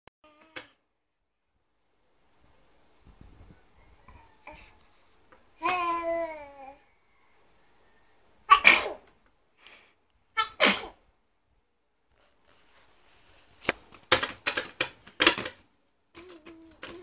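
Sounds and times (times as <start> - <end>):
baby sneezing: 8.5 - 9.1, 10.4 - 11.0.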